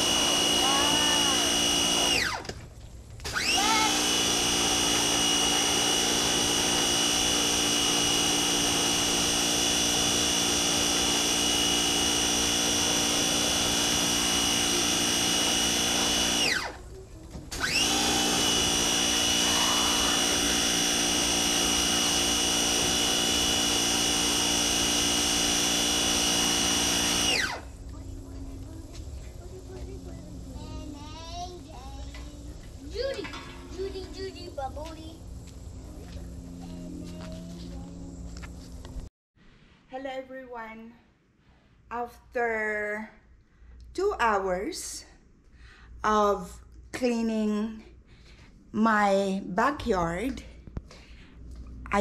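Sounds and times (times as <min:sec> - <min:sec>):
pressure washer motor whine: 0:00.0 - 0:30.6.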